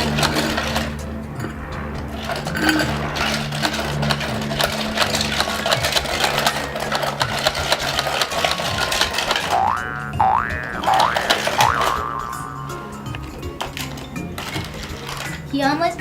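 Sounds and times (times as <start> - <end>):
plastic toy clicking and rattling: 0.0 - 16.0
repeating boing sound effect: 9.6 - 12.9.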